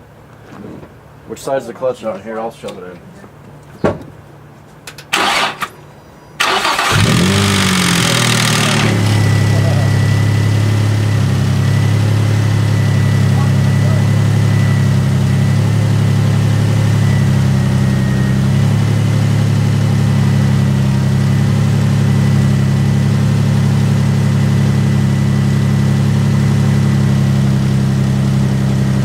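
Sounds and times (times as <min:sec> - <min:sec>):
car engine idling: 0:06.4 - 0:29.0.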